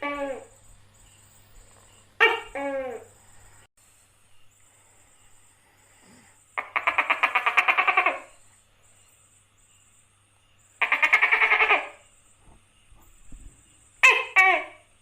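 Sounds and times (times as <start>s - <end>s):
gecko rattling calls: 4.6s - 15.0s.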